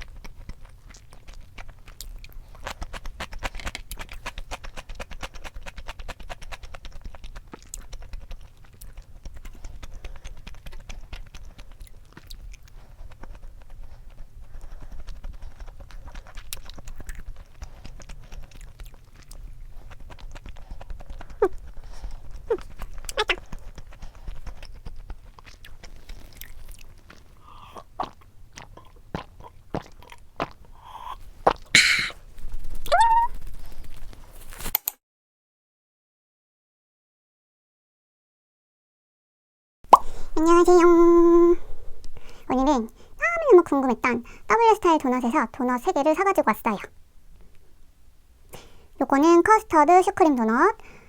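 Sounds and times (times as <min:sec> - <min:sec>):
chewing and eating: 0:00.0 - 0:34.7, 0:39.9 - 0:47.8, 0:48.4 - 0:51.0
squeaky mouth sounds: 0:21.2 - 0:21.7, 0:22.4 - 0:23.6, 0:27.4 - 0:32.2, 0:32.8 - 0:33.5, 0:39.9 - 0:41.6.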